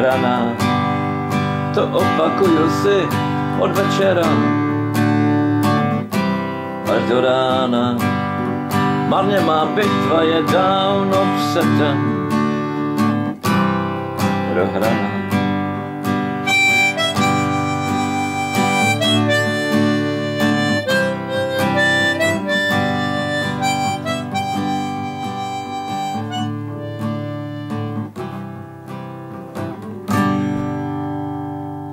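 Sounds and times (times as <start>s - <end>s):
strummed acoustic guitar: 0.0s - 31.9s
harmonica melody: 8.0s - 31.6s.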